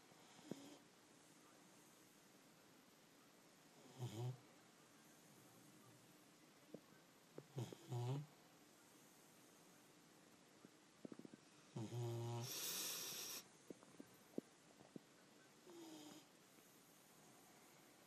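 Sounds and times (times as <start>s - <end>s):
dog snoring: 0.2s - 0.8s, 3.8s - 4.4s, 7.5s - 8.3s, 11.7s - 13.4s, 15.7s - 16.3s.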